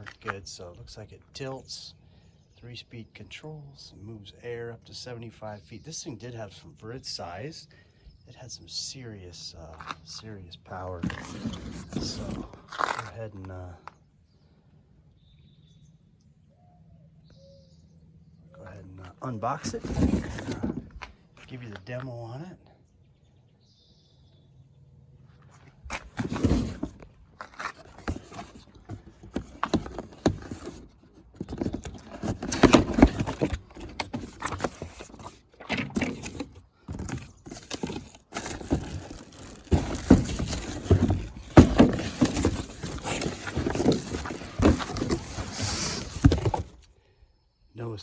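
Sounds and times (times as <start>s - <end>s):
cardboard box rustling: 10.8s - 13.2s, 19.2s - 21.1s, 25.4s - 46.9s.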